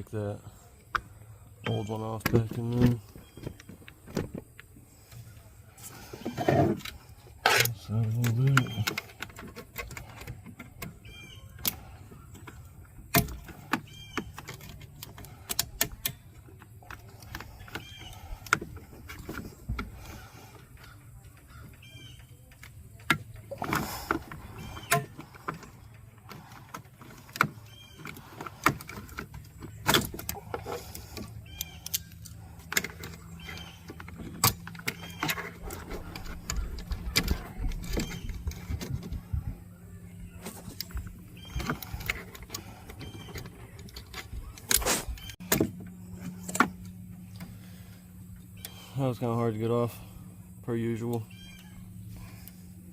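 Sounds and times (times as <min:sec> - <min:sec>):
low hum: 0:00.0 - 0:52.9.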